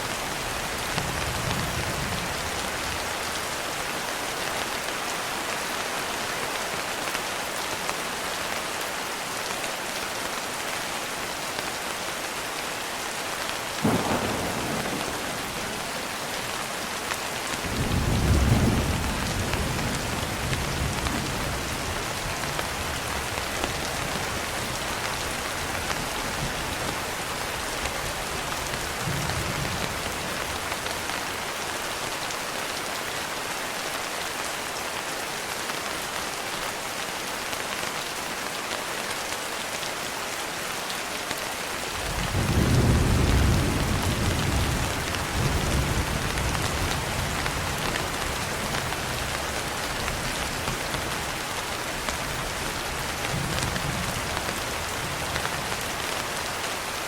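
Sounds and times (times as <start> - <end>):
steady rain falling: 0.0 - 57.0
thunder crack and rumble: 13.8 - 16.6, 17.5 - 26.6, 42.0 - 49.4.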